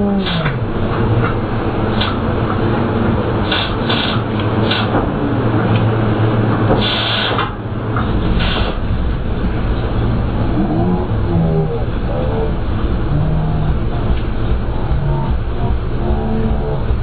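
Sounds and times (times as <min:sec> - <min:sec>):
wind rush: 0:00.0 - 0:16.1
engine running hard: 0:00.0 - 0:17.0
bursts of hiss: 0:03.4 - 0:05.0
voices calling out: 0:10.4 - 0:17.0.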